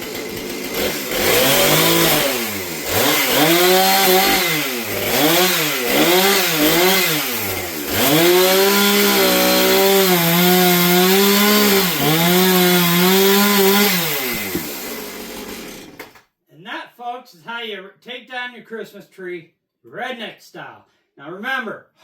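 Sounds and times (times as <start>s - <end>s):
chainsaw revving: 0.0s - 16.2s.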